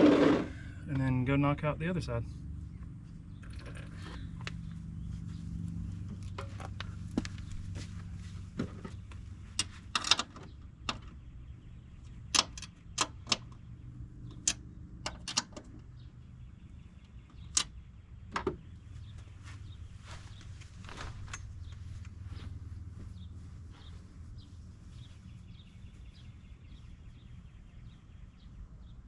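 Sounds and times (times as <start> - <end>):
steady low hum: 0.0 - 15.1, 15.7 - 29.0
hand tools clinking and knocking: 20.8 - 22.5.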